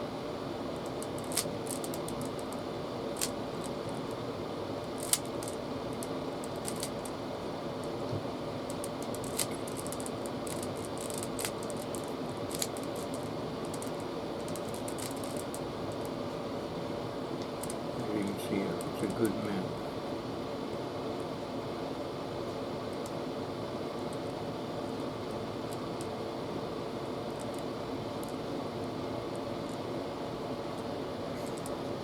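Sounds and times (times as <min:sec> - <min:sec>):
low room hum: 0:00.0 - 0:32.0
plastic puzzle cube clicking: 0:06.6 - 0:06.9, 0:08.8 - 0:11.9.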